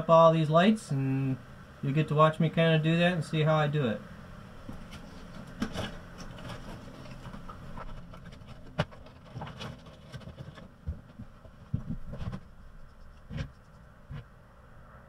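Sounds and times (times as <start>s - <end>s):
knocks and clicks of handling: 4.6s - 14.3s
dull low knocks: 10.7s - 14.3s.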